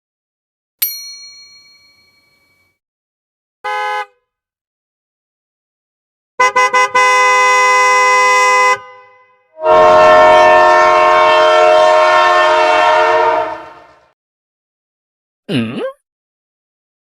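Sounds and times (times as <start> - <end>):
vehicle horn beeps: 6.4 - 13.9
chord-like horn blast: 9.6 - 14.1.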